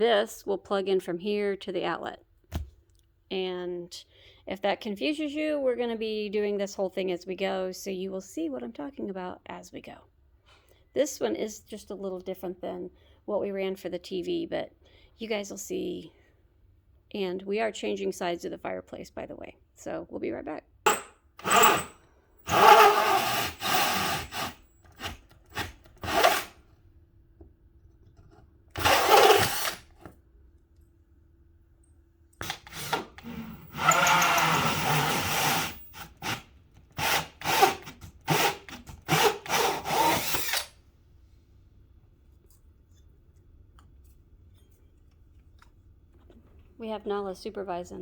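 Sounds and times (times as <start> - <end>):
power drill bursts: 20.9 - 26.6, 28.8 - 29.8, 32.4 - 36.4, 37.0 - 40.7.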